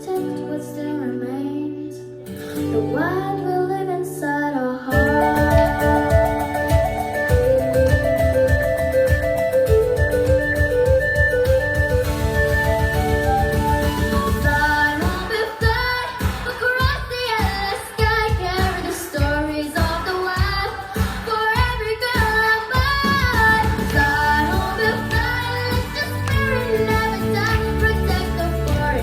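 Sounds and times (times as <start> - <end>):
musical accompaniment: 4.9 - 16.8, 23.1 - 29.0.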